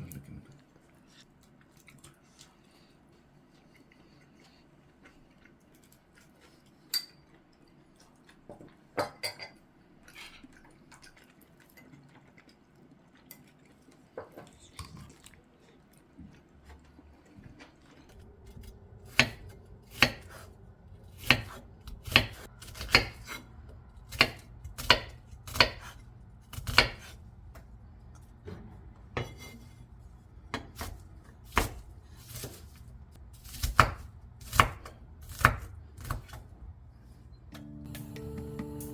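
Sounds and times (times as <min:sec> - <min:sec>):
low steady hum: 0:13.8 - 0:38.9
knife chopping on cutting board: 0:19.1 - 0:20.5, 0:21.2 - 0:23.4, 0:24.1 - 0:27.2, 0:30.5 - 0:32.7, 0:33.4 - 0:36.4.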